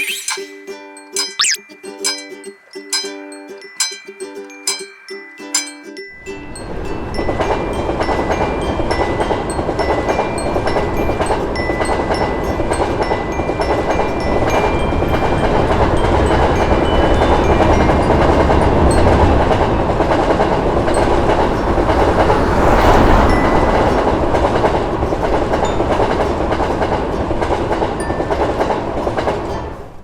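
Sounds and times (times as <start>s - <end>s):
train rumbling along rails: 6.2s - 30.0s.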